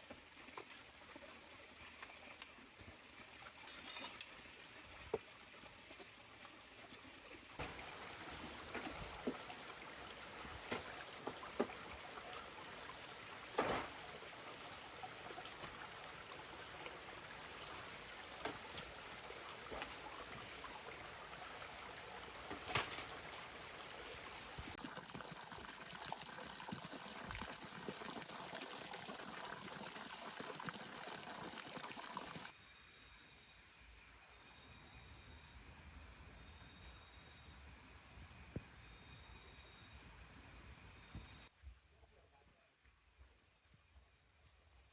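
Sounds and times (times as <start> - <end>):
insects chirping: 3.3 - 42.1
rushing water: 7.5 - 32.5.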